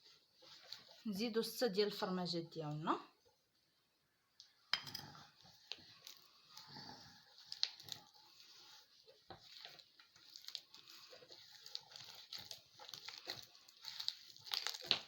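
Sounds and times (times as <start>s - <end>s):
wet squelching in a bowl: 5.2s - 15.0s.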